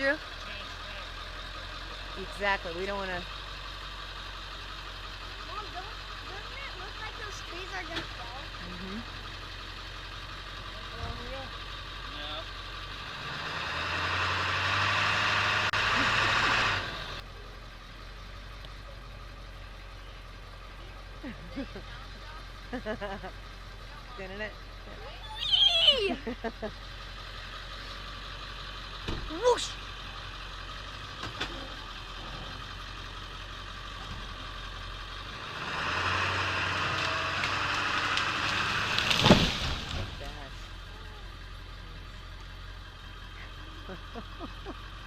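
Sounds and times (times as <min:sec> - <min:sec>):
truck engine running hard: 0:00.0 - 0:45.0
rough crackling noise: 0:36.9 - 0:40.3
loud crash: 0:39.0 - 0:40.2.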